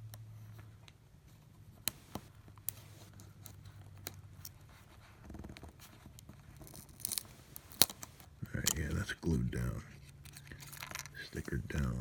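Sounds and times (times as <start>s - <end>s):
low steady hum: 0.0s - 12.0s
small parts and tools clicking: 10.2s - 11.2s.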